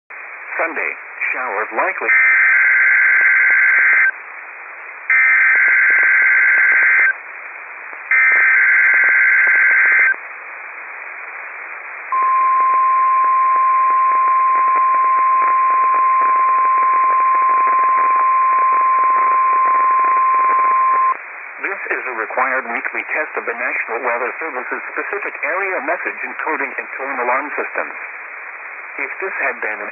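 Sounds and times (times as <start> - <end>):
radio hiss: 0.1 - 29.9
buzzy data tone bursts: 2.1 - 4.2, 5.1 - 7.2, 8.1 - 10.2.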